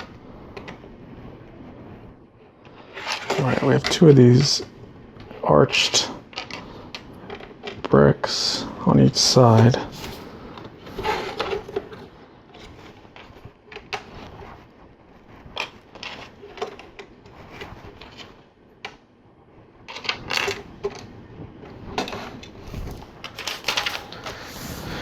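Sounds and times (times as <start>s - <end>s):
plastic bricks clicking and clattering: 15.6s - 18.3s, 19.9s - 21.1s, 22.0s - 24.4s.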